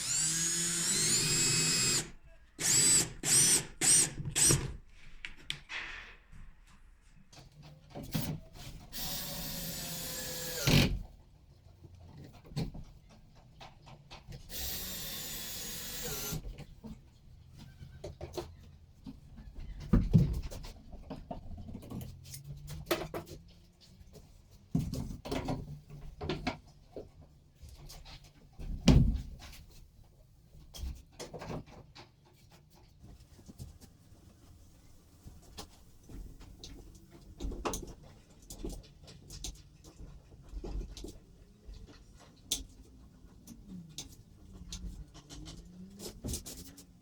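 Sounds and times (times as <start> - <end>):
power drill running: 0.0 - 4.8, 8.9 - 10.9, 14.5 - 16.4.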